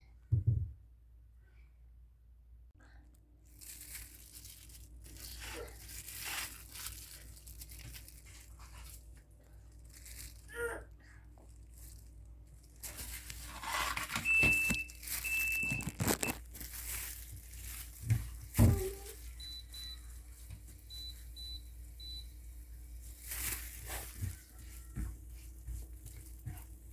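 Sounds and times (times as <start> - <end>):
rustling and crinkling: 3.4 - 26.9
appliance beeps: 14.1 - 16.4, 19.4 - 20.2, 20.8 - 22.4.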